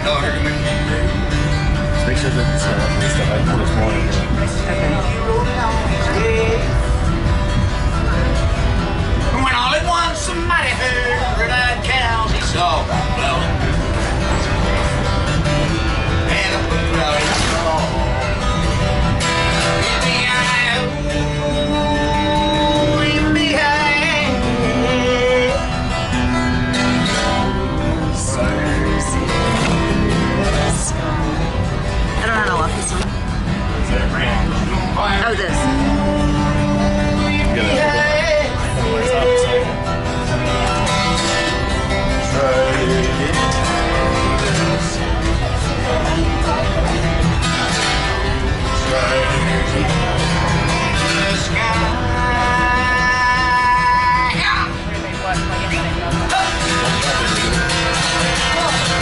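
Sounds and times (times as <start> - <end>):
acoustic guitar strumming country song: 0.0 - 59.0
person singing: 35.5 - 39.9.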